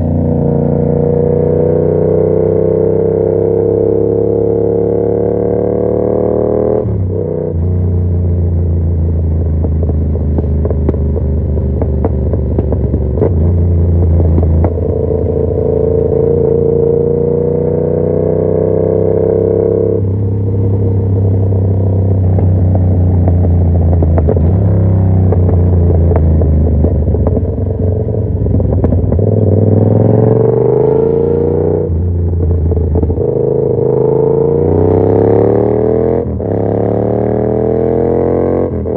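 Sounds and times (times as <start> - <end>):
motorcycle engine shifting gears: 0.0 - 38.9.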